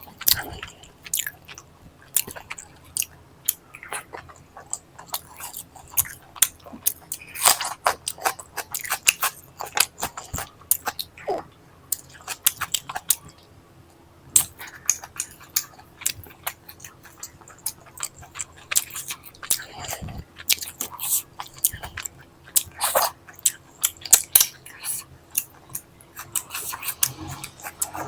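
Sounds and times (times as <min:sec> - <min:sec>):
wet chewing and mouth smacks: 0:14.4 - 0:28.0.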